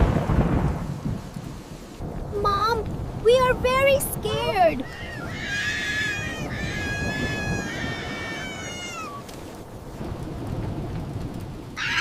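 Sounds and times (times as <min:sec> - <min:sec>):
rain: 0:00.0 - 0:12.0
wind: 0:00.0 - 0:12.0
high-pitched wailing cry: 0:04.8 - 0:09.3, 0:11.8 - 0:12.0.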